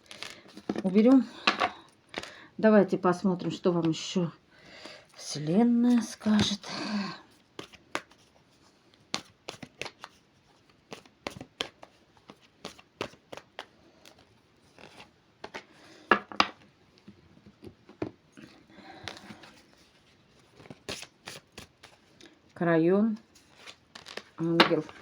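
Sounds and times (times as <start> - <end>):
cards being shuffled: 0.0 - 2.3, 7.5 - 8.3, 8.9 - 16.6, 19.0 - 22.4, 23.2 - 25.0
cards rustling: 0.0 - 2.4, 7.5 - 16.5, 18.8 - 22.4, 23.2 - 25.0.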